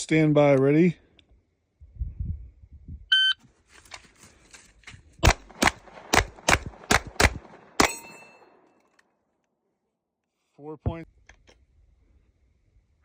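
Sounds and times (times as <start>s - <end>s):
shot timer beep: 3.1s - 3.4s
gunshots in quick succession: 5.2s - 8.2s.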